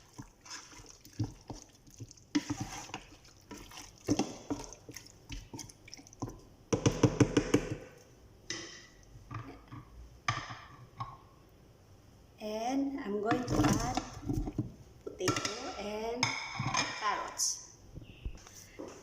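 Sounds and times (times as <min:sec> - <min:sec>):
spoon scraping against pot: 0:00.0 - 0:05.7
wet squelching of stirred sauce: 0:00.0 - 0:06.6.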